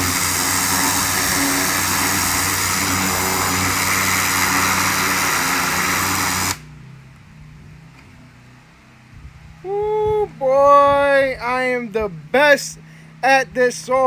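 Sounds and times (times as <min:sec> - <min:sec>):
pressure washer spray hiss: 0:00.0 - 0:06.7
pressure washer engine hum: 0:00.0 - 0:07.0.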